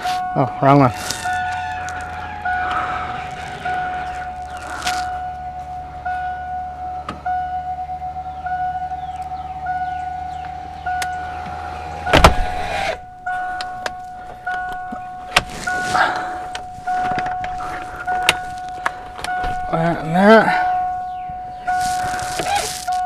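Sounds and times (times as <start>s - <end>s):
electric motor running: 0.0s - 13.9s
repeating warning chime: 0.0s - 23.0s
steady electronic tone: 0.2s - 15.2s
loud thump: 11.1s - 13.0s.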